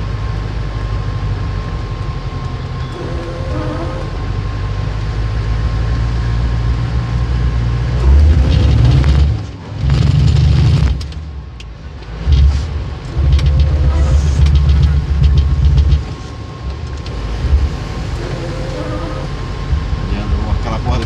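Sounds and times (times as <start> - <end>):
vehicle engine rumble: 0.0 - 21.0
knocks and rattles: 12.1 - 16.3.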